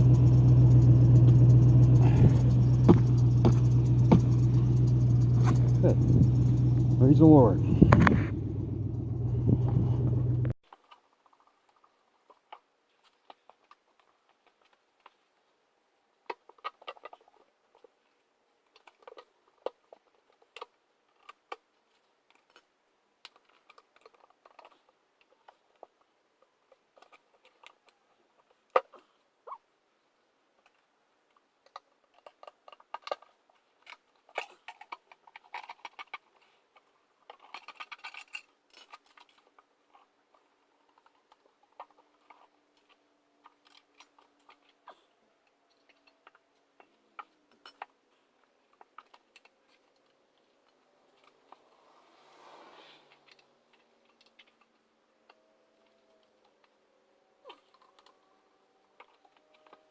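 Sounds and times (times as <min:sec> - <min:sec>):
tools and parts clinking: 0:00.0 - 0:11.8, 0:31.6 - 0:52.0, 0:53.1 - 0:56.8, 0:57.5 - 0:59.9.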